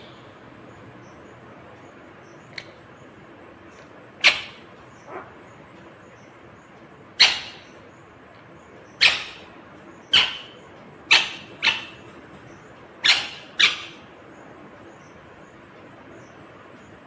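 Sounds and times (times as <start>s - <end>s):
parrot giving high-pitched calls: 4.2s - 5.4s, 7.2s - 7.8s, 9.0s - 9.5s, 10.1s - 12.2s, 13.0s - 14.1s.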